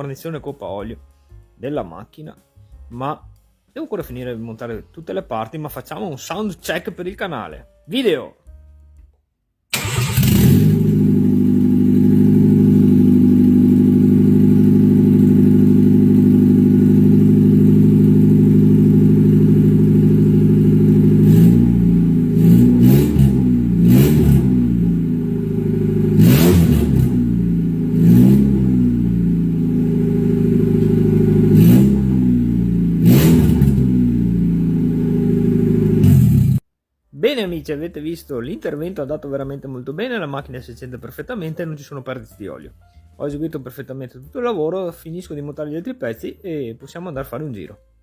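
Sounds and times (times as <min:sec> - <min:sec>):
car engine idling and revving: 0:09.8 - 0:36.6.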